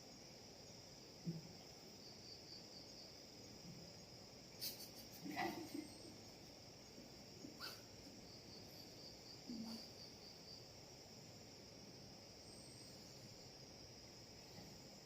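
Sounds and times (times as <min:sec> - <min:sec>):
insects chirring: 0:00.0 - 0:15.0
rustle: 0:00.0 - 0:15.0.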